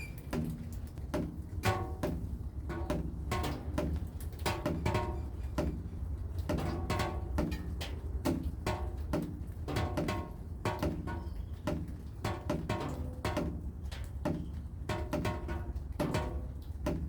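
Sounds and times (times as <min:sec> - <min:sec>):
rain dripping plinks: 0:00.0 - 0:17.0.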